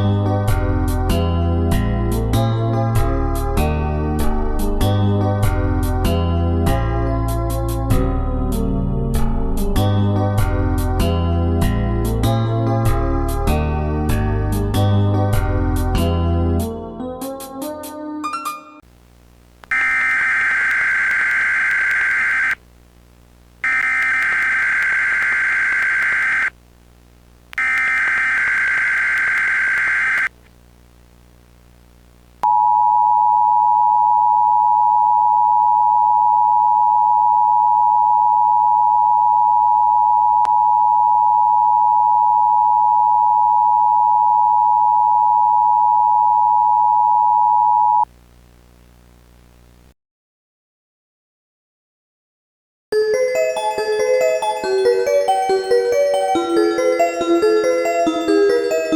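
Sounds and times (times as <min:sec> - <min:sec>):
shrill warbling digital data bursts: 0:19.7 - 0:22.6, 0:23.6 - 0:26.5, 0:27.6 - 0:30.3
two-tone attention signal: 0:19.7 - 0:22.6, 0:23.6 - 0:26.5, 0:27.6 - 0:30.3.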